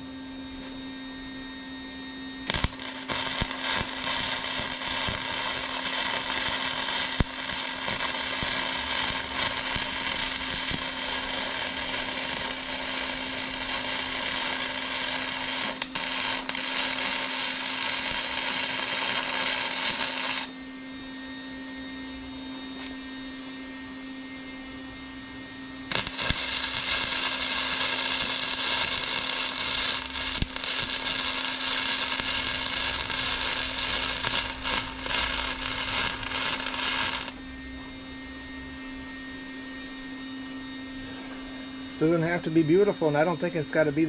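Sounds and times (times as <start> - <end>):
steady hum: 0.0 - 21.3, 23.7 - 44.0
welding arc hissing and crackling: 2.4 - 20.6, 25.9 - 37.4.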